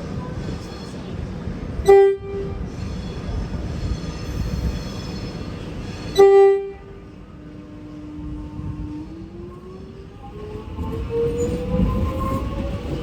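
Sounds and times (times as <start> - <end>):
steady tone of moving train: 0.0 - 13.0
train rumbling: 0.0 - 13.0
train horn blasts: 1.8 - 7.1.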